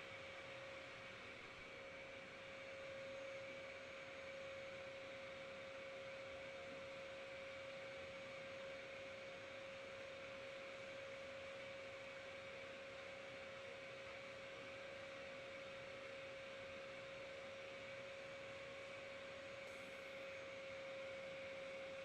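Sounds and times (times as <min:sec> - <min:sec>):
high-pitched electrical hum: 0:19.4 - 0:22.0.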